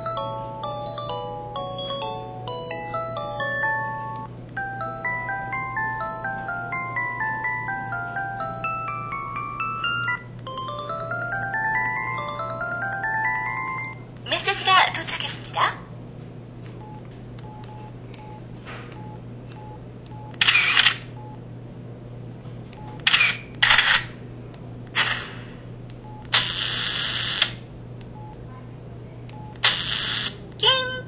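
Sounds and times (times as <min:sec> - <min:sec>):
phone camera shutter sounds: 0:20.3 - 0:21.1, 0:23.0 - 0:24.2, 0:24.9 - 0:25.6, 0:26.3 - 0:27.6, 0:29.6 - 0:30.4.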